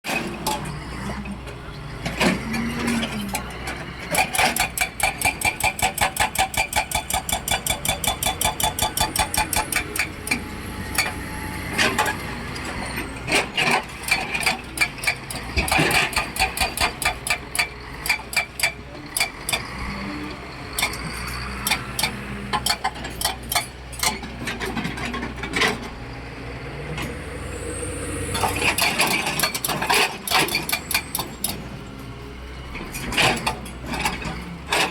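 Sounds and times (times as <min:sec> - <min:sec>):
diesel engine running: 0:00.2 - 0:34.9.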